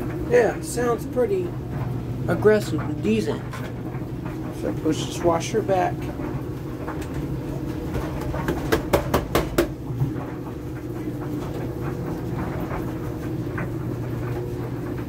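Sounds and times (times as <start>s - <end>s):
clothes dryer rumble and hum: 0.0s - 15.0s
sharp knocks: 8.4s - 9.8s.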